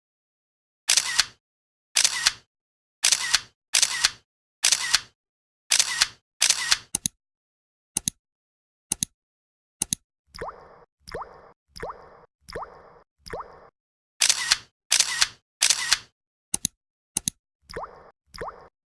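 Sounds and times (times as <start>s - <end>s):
camera shutter double clicks: 0.9s - 1.4s, 2.0s - 2.4s, 3.0s - 5.1s, 5.7s - 7.0s, 14.2s - 16.1s.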